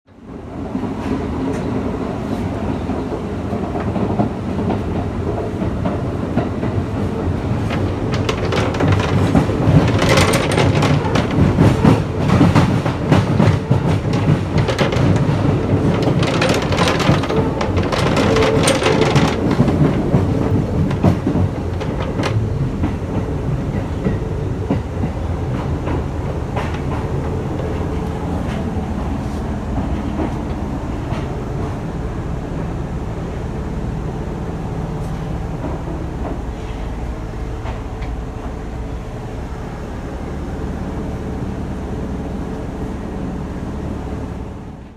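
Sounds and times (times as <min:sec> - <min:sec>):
train rumble: 0:00.1 - 0:44.9
metal plate rattling: 0:07.7 - 0:22.4.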